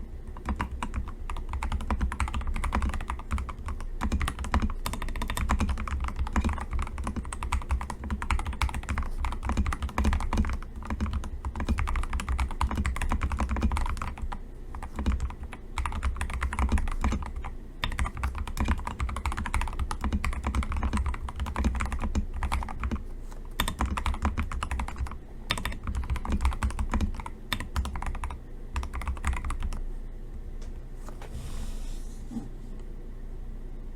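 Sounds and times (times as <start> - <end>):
mechanical keyboard typing: 0.3 - 29.8.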